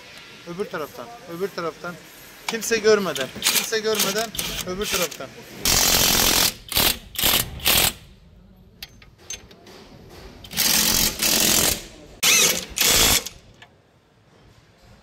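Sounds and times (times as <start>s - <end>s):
impact wrench hammering: 5.7s - 8.0s, 10.2s - 13.4s.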